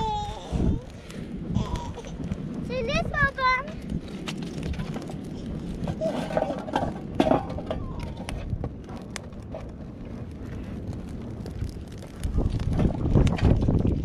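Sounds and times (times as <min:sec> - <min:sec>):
wind rumbling on microphone: 0:00.0 - 0:14.0.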